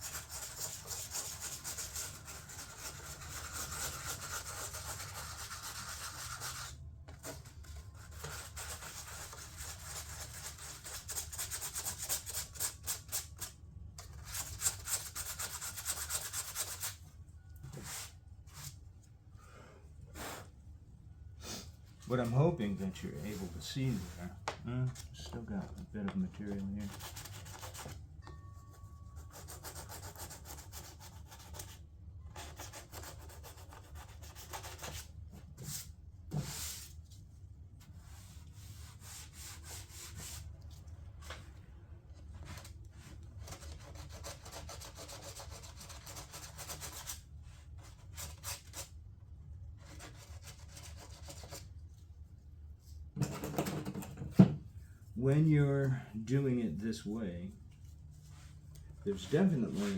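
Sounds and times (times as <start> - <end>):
sandpaper rubbing on filler: 0.0 - 13.6, 14.2 - 17.0, 23.2 - 24.3, 26.8 - 28.0, 29.3 - 31.8, 32.4 - 37.0, 37.9 - 40.5, 43.4 - 48.9, 49.8 - 51.7, 59.2 - 59.9.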